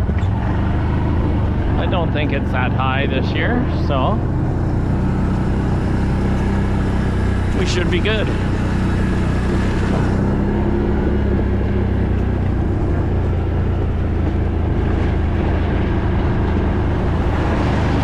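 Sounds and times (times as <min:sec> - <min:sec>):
quad engine droning: 0:00.0 - 0:18.0.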